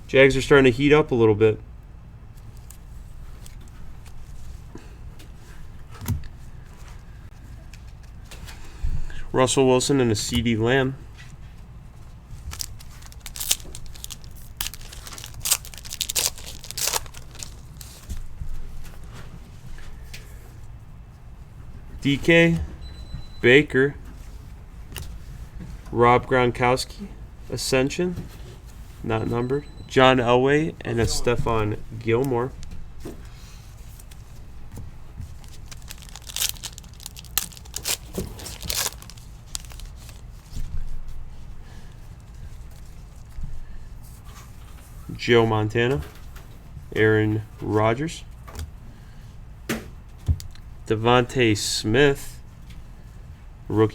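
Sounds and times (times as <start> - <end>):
wrapper crinkling and tearing: 12.4 - 18.3, 35.2 - 40.5.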